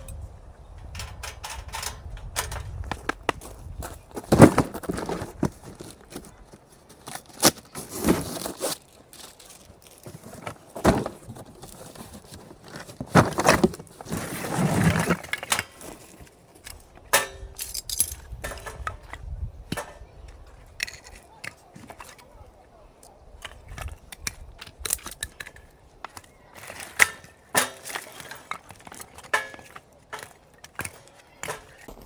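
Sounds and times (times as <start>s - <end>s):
rustling of gear: 0.8s - 17.0s.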